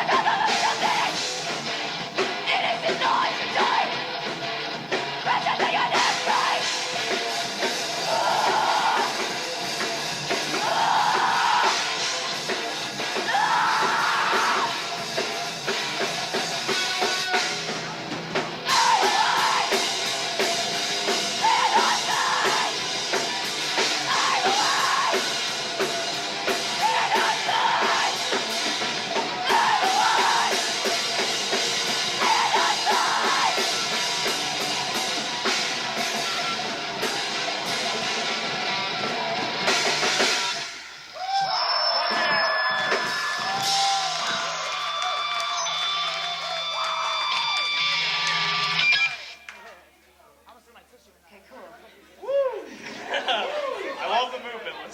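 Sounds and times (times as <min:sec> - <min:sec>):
shouted vocals: 0:00.0 - 0:01.4, 0:02.4 - 0:04.0, 0:05.2 - 0:06.8, 0:07.9 - 0:09.4, 0:10.5 - 0:12.1, 0:13.2 - 0:15.0, 0:18.6 - 0:20.1, 0:21.1 - 0:25.5, 0:26.5 - 0:28.5, 0:29.2 - 0:31.1, 0:31.9 - 0:37.4, 0:52.2 - 0:54.0
heavy rock band playing: 0:00.0 - 0:41.4, 0:42.0 - 0:49.3.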